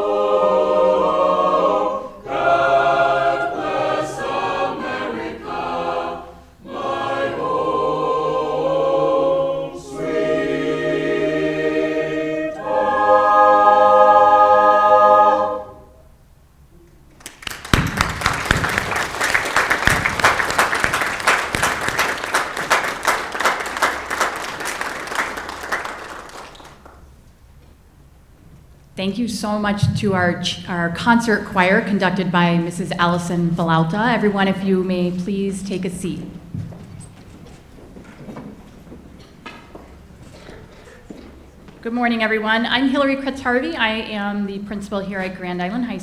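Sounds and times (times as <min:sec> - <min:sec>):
choir singing: 0:00.0 - 0:16.2
audience applauding: 0:17.1 - 0:27.1.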